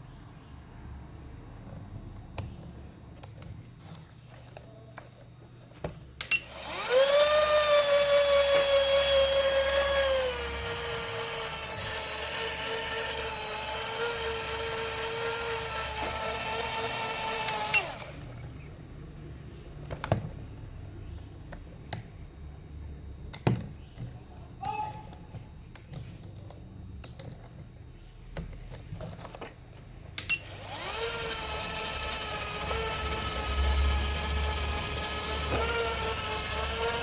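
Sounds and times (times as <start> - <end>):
small electric motor whine: 6.3 - 18.4, 30.4 - 37.0.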